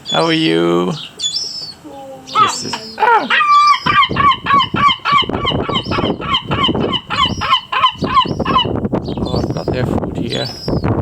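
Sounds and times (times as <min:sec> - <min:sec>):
gull honking cries: 0:02.3 - 0:08.8.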